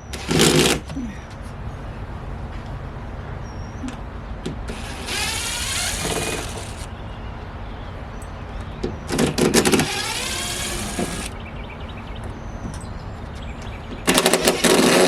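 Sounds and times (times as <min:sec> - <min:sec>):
driver rattle: 0:04.5 - 0:06.9, 0:09.1 - 0:11.4
cordless power driver motor: 0:04.7 - 0:06.9, 0:09.6 - 0:11.4.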